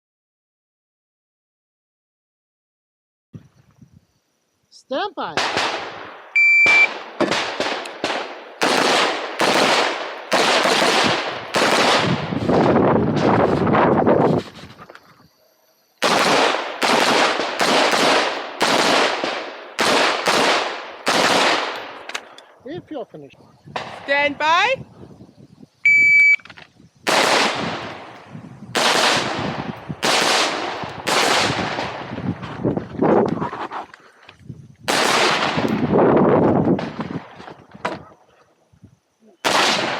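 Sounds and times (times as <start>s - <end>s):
rifle shots echoing: 5.4s - 13.5s, 16.0s - 22.2s, 27.1s - 32.3s, 34.9s - 35.9s, 39.4s - 39.9s
electronic start beep: 6.4s - 6.9s, 25.9s - 26.4s.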